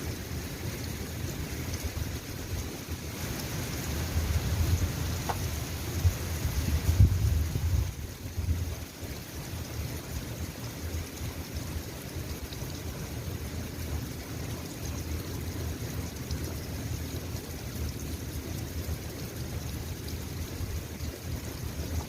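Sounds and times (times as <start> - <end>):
steady rain falling: 0.0 - 22.0
raindrop ticks: 4.7 - 6.2, 17.5 - 22.0.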